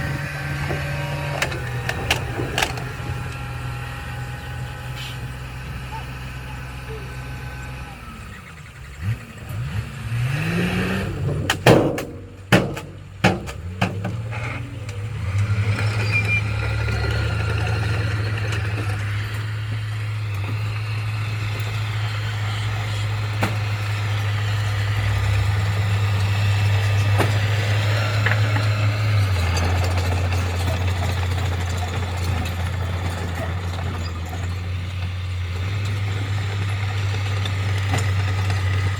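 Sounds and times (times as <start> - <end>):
heavy machinery diesel engine: 0.0 - 38.9
loud knocks: 11.3 - 14.3.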